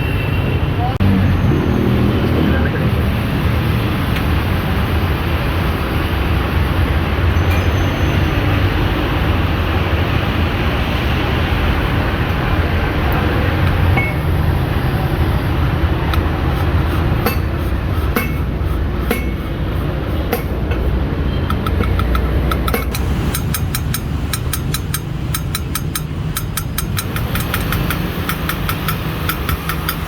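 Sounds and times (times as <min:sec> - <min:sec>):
metallic clinks and taps: 0:21.5 - 0:30.0.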